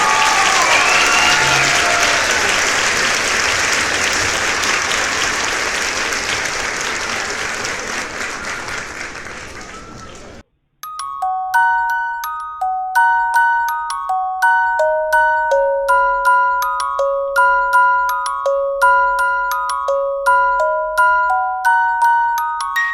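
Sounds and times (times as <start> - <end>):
crowd clapping: 0.0 - 10.4
people cheering: 0.0 - 10.4.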